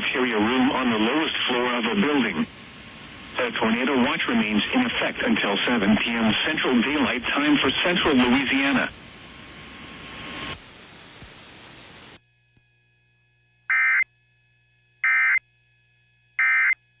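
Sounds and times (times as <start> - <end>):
radio hiss: 0.0 - 12.2.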